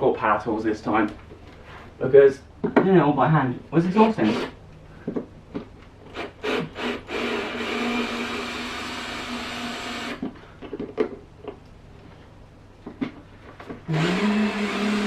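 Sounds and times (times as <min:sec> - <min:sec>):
electric power tool motor: 0:13.9 - 0:15.0.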